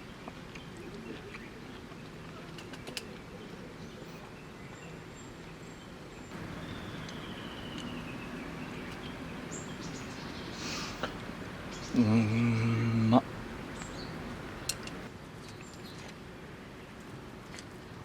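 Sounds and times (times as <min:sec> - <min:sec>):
faint bird calls: 0:06.3 - 0:15.1
light clicks: 0:14.6 - 0:15.1.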